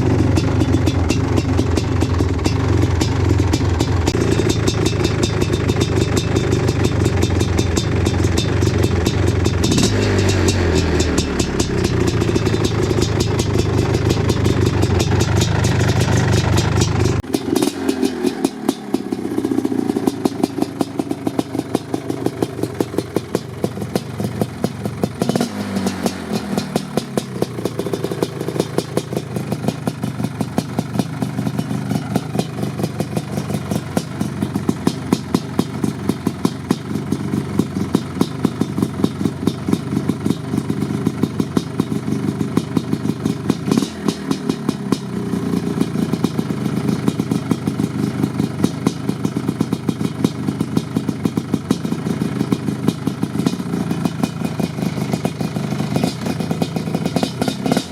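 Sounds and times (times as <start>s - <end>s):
engine throttle blips: 0.0s - 18.6s
two-stroke engine idling: 0.0s - 57.9s.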